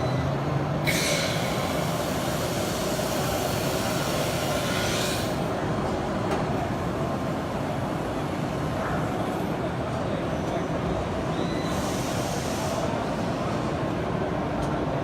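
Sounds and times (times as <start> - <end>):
busy exhibition hall din: 0.0 - 15.0
hiss: 0.9 - 5.4, 11.7 - 13.0.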